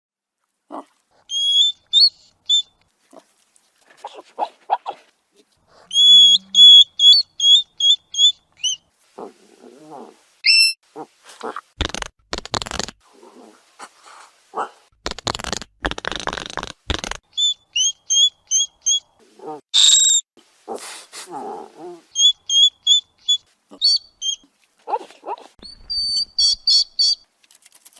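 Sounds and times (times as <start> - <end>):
hedgehog snuffling and huffing: 0.7 - 7.6, 8.6 - 17.2, 20.6 - 26.8
hedgehog squeaking: 1.3 - 2.8, 5.9 - 8.8, 10.4 - 12.9, 14.6 - 19.1, 21.8 - 27.2.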